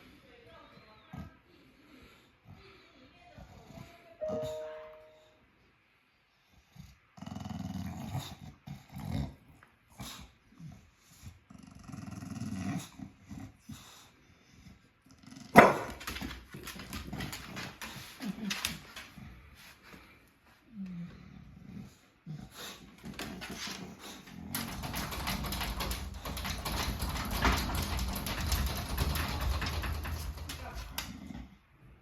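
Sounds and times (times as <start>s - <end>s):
dog growling: 6.8s - 9.5s, 11.5s - 13.6s.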